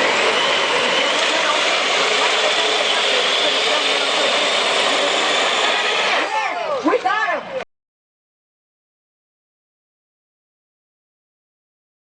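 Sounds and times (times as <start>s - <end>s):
electric motor whine: 0.0s - 6.3s
drivetrain and tyre noise: 0.0s - 6.4s.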